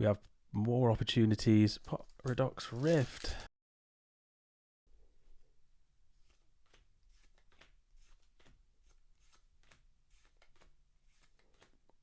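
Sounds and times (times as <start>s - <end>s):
foil pack crinkling: 1.8s - 3.5s
cards flicking and clicking: 6.3s - 11.8s.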